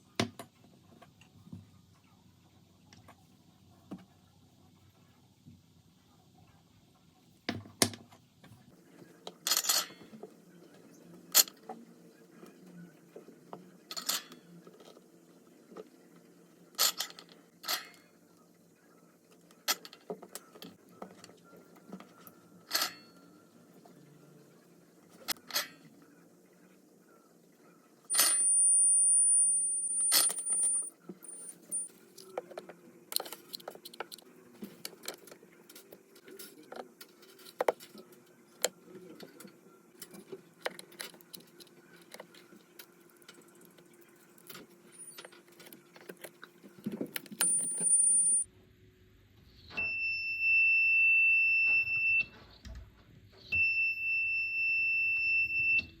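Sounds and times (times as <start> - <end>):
high-pitched buzzer whine: 28.1 - 31.9, 47.4 - 48.4
lower buzzer beep: 28.1 - 31.9, 47.4 - 48.5, 53.6 - 56.0.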